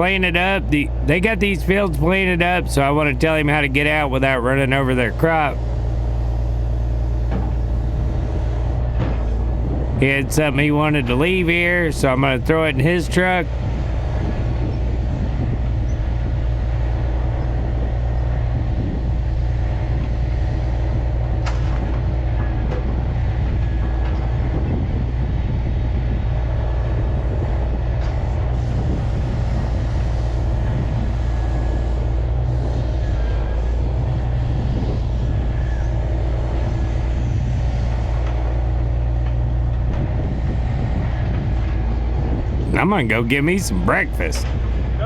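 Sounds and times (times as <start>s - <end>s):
truck engine running: 0.0s - 22.6s, 42.6s - 44.4s.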